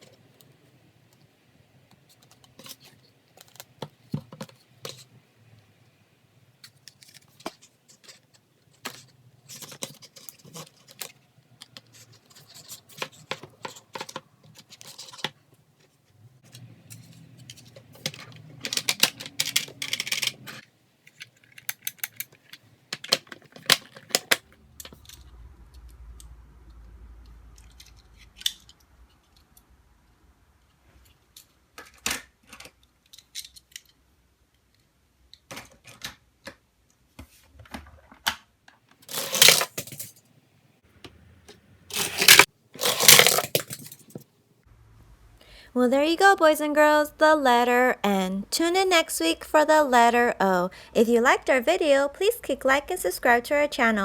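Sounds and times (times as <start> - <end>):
plastic toy pieces clattering: 17.0 - 25.1, 39.0 - 40.2, 41.9 - 44.2
rustling: 39.0 - 40.2, 41.9 - 44.3.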